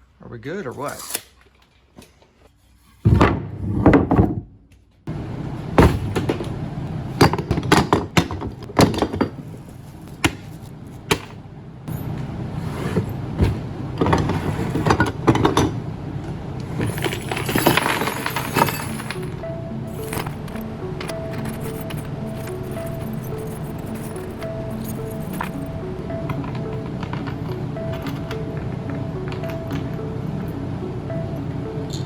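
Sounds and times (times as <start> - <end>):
hard objects knocking and clanking: 7.2 - 12.3, 16.8 - 30.0.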